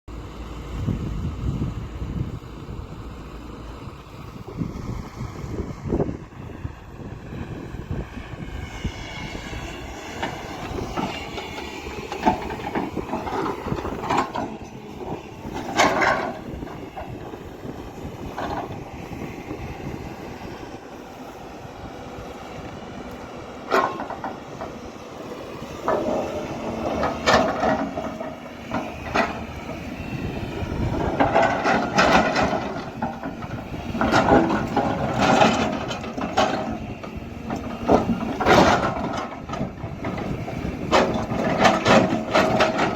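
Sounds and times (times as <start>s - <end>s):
excavator engine under load: 0.1s - 42.9s
bucket clanking on boulders: 37.6s - 39.5s, 40.8s - 42.9s.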